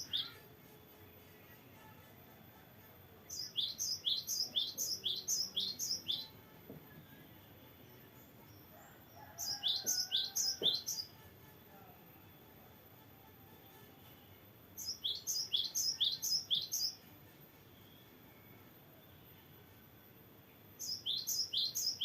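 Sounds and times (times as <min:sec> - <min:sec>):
bird whistled song: 0:00.0 - 0:00.4, 0:03.3 - 0:06.4, 0:09.4 - 0:11.1, 0:14.8 - 0:17.0, 0:20.8 - 0:22.0.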